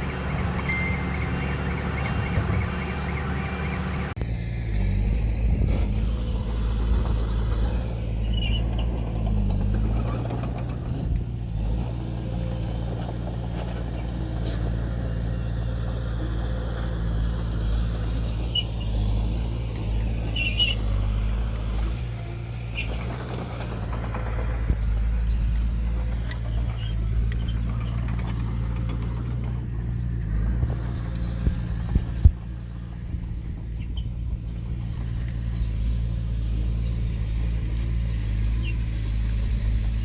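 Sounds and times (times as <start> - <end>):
short high squeaks: 0.0 - 4.1, 8.2 - 9.5, 19.8 - 32.4, 33.7 - 34.2, 34.9 - 39.2
diesel engine running: 0.0 - 40.0.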